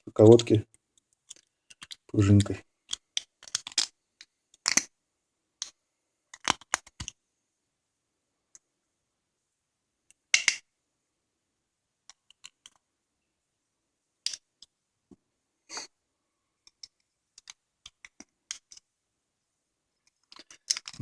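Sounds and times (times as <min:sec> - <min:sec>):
small steel parts clicking: 0:20.1 - 0:21.0.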